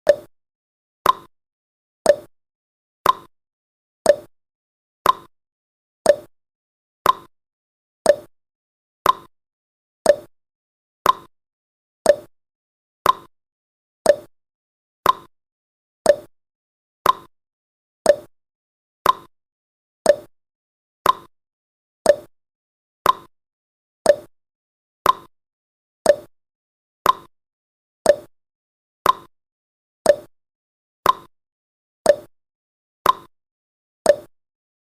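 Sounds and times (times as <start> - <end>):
timer ticking: 0.0 - 0.3, 1.0 - 1.3, 2.1 - 2.3, 3.0 - 3.3, 4.1 - 4.3, 5.0 - 5.3, 6.1 - 6.3, 7.0 - 7.3, 8.1 - 8.3, 9.0 - 9.3, 10.0 - 10.3, 11.0 - 11.3, 12.0 - 12.3, 13.0 - 13.3, 14.0 - 14.3, 15.0 - 15.3, 16.1 - 16.3, 17.0 - 17.3, 18.1 - 18.3, 19.0 - 19.3, 20.1 - 20.3, 21.0 - 21.3, 22.1 - 22.3, 23.0 - 23.3, 24.1 - 24.3, 25.0 - 25.3, 26.0 - 26.3, 27.0 - 27.3, 28.1 - 28.3, 29.0 - 29.3, 30.1 - 30.3, 31.0 - 31.3, 32.1 - 32.3, 33.0 - 33.3, 34.1 - 34.3.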